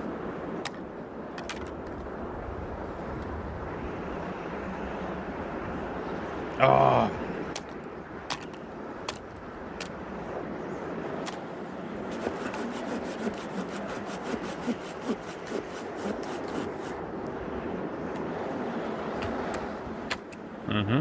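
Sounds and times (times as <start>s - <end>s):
hand tool scraping wood: 12.1s - 17.0s.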